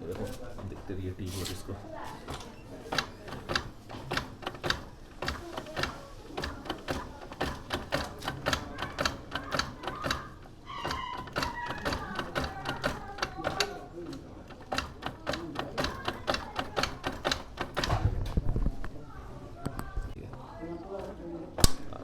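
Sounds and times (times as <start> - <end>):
rapid mechanical clicking: 2.2 - 18.3.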